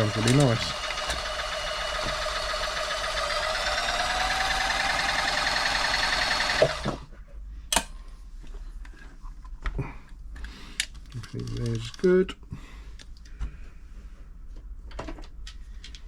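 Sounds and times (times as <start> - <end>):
sewing machine running: 0.0 - 7.0.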